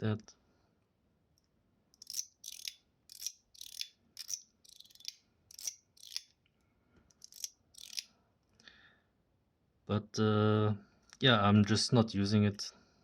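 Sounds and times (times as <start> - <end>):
fidget slider clicking: 2.0 - 6.3.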